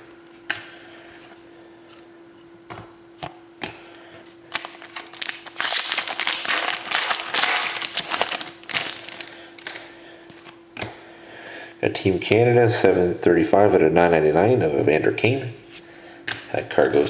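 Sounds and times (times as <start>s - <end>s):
foil wrapper crinkling: 4.4s - 9.9s.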